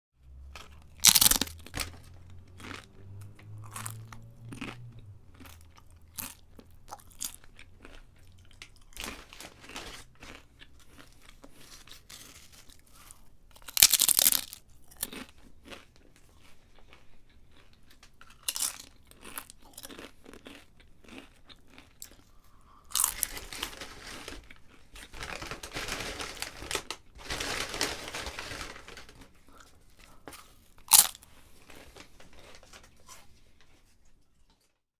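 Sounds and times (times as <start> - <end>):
person crunching potato chips: 0.2 - 34.0.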